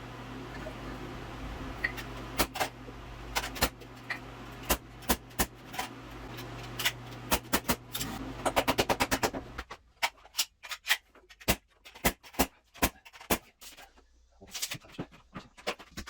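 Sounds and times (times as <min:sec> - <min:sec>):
steady low hum: 0:00.0 - 0:09.7.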